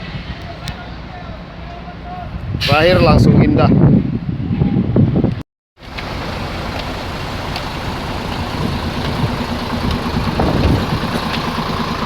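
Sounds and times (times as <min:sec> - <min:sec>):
bus engine idling: 0:05.8 - 0:12.0.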